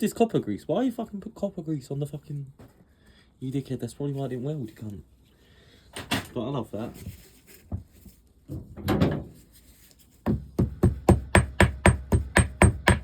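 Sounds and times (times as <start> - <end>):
hammer tapping on metal: 10.3 - 13.0.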